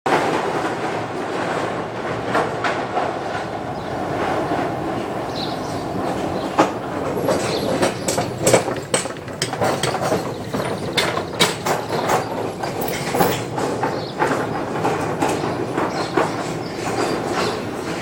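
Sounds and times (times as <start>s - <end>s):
traffic rumble: 0.1s - 18.0s
wooden planks knocking: 6.1s - 18.0s.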